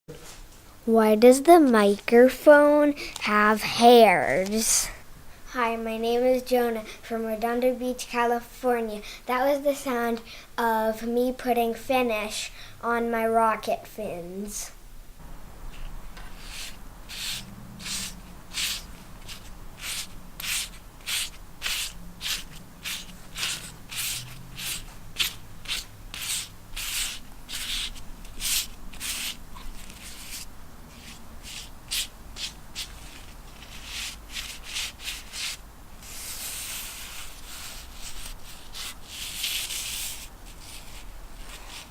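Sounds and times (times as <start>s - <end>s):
sandpaper rubbing: 16.2s - 41.9s.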